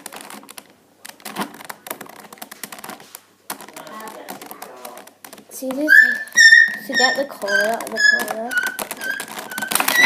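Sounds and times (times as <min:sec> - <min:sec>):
plastic cube pieces clicking: 0:07.7 - 0:10.0.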